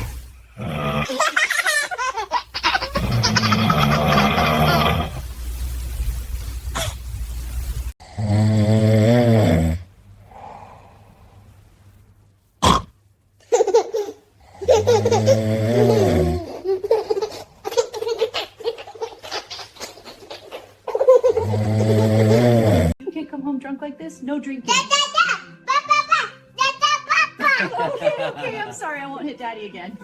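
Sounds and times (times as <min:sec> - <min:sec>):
baby laughing and giggling: 0:01.1 - 0:05.1, 0:13.4 - 0:22.0, 0:24.7 - 0:28.4.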